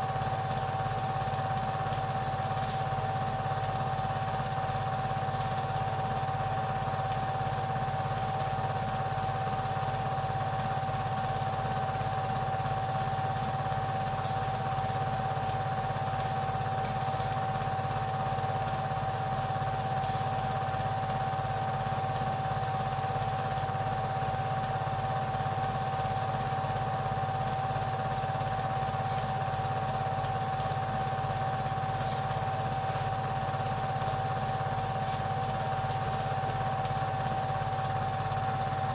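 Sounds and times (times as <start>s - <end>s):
film projector running: 0.0s - 38.9s
film drive clatter: 1.8s - 3.4s, 31.4s - 38.9s.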